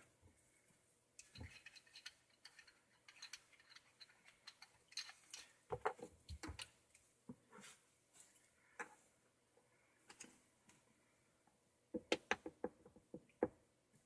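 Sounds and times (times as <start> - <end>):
plastic pipe parts clicking: 1.2 - 7.4, 11.9 - 13.6.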